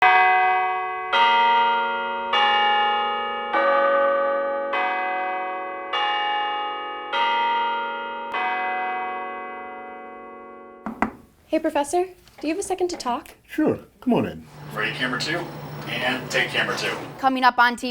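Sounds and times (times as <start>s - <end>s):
tower bells ringing: 0.0s - 10.8s, 14.5s - 17.2s.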